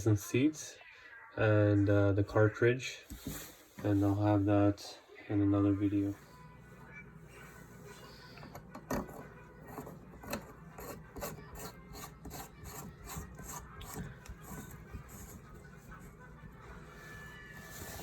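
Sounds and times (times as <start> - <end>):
scraping and clicking from hand work: 8.4 - 15.5.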